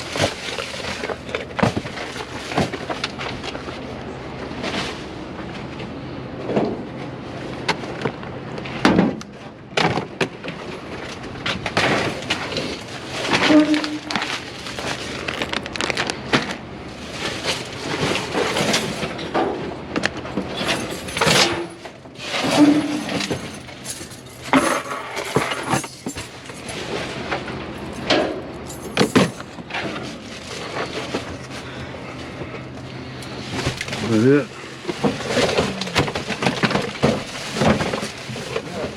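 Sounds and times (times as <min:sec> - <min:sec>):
rustling of rummaged items: 0:00.0 - 0:38.9
clinks and knocks: 0:20.4 - 0:26.8, 0:28.0 - 0:30.0.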